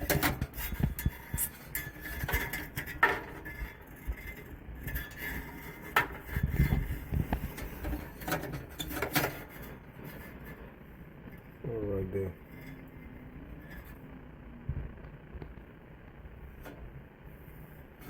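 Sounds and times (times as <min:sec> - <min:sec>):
rubbing and handling rumble: 0:00.0 - 0:18.0.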